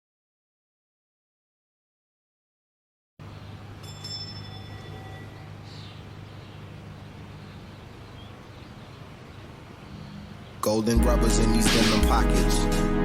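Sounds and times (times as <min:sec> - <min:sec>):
faint high held tones: 0:03.4 - 0:07.7.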